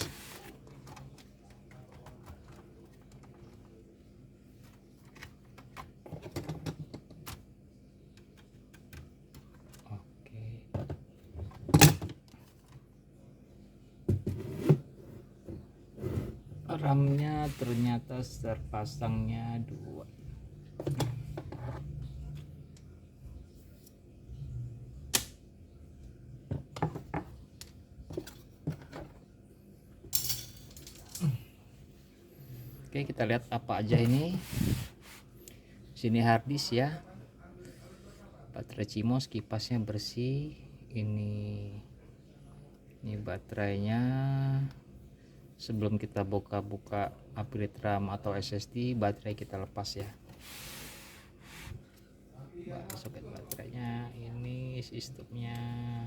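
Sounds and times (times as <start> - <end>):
loud plastic snap: 25.1 - 25.4.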